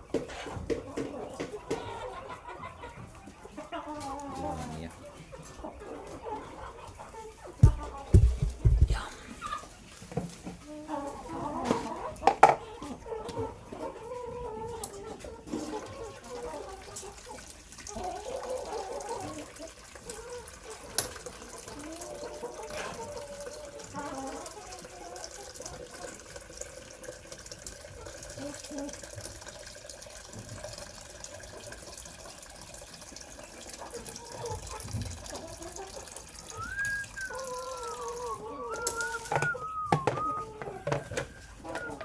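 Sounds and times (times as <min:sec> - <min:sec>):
chickens calling: 0:00.0 - 0:42.0
water trickling into container: 0:06.9 - 0:10.3, 0:15.0 - 0:42.0.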